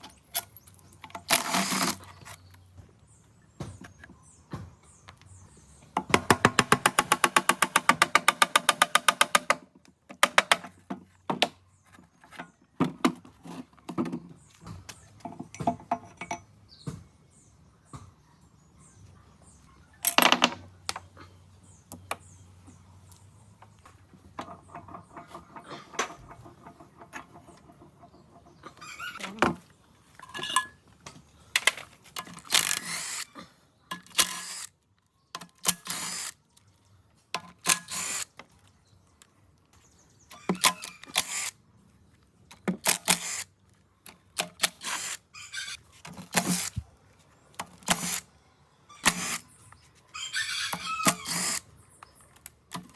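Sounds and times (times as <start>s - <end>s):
metal engine parts clinking: 30.2s - 30.8s.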